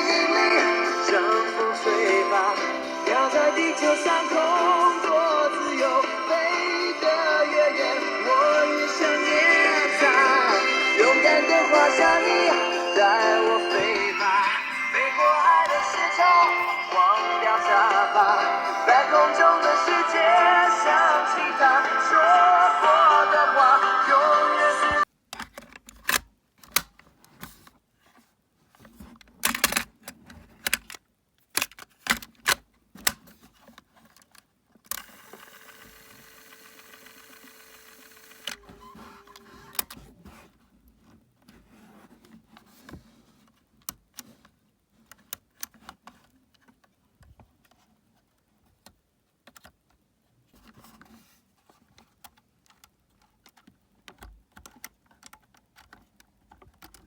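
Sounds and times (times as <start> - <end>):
tape winding motor hum: 34.9 - 39.9.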